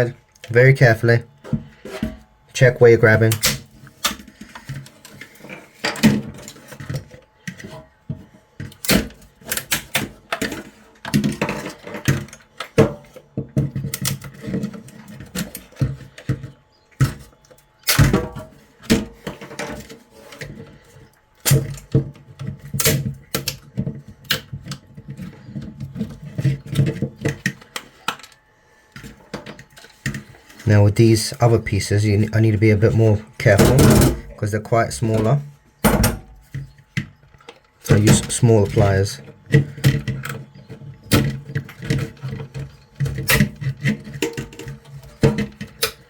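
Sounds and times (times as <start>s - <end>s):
hard plastic pieces snapping: 3.2s - 4.6s.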